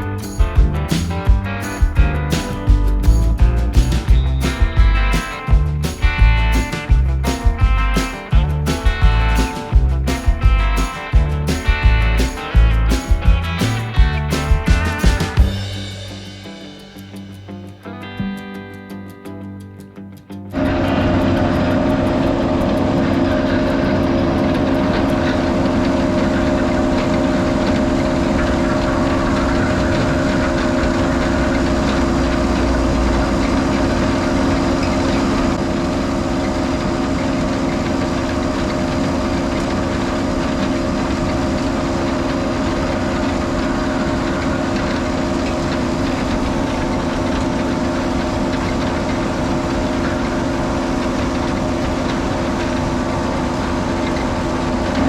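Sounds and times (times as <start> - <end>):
heavy machinery engine drone: 0.0 - 17.6, 20.5 - 55.0.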